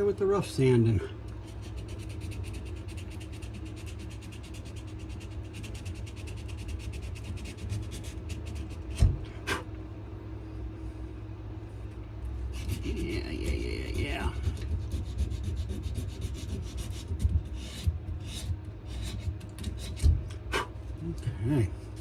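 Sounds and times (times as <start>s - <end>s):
low hum: 0.0s - 22.0s
sandpaper scratching on wood: 1.4s - 9.0s, 12.5s - 20.7s.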